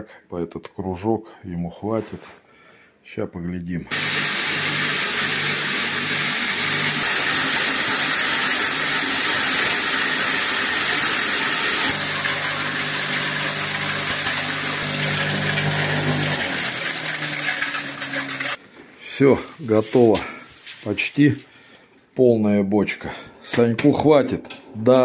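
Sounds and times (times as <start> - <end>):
electric grain crusher grinding: 3.9 - 18.6.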